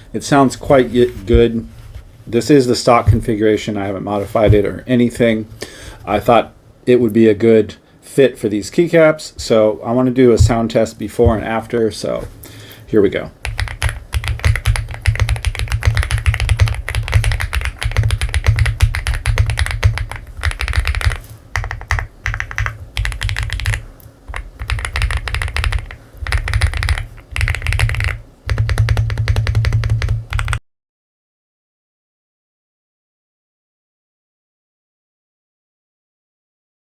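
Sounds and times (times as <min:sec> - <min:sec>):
typing on mechanical keyboard: 0:13.4 - 0:30.6.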